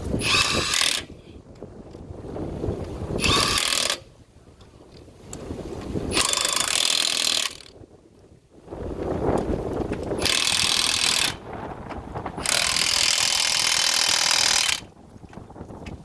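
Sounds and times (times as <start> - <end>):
wrench rattling on wheel nuts: 10.1 - 11.4, 12.4 - 14.9.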